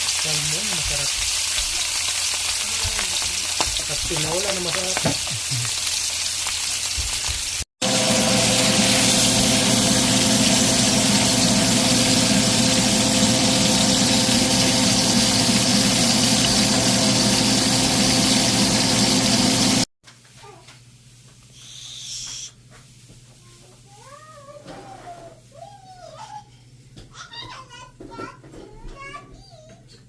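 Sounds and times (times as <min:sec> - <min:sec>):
machine motor hum and whine: 0:07.9 - 0:19.8.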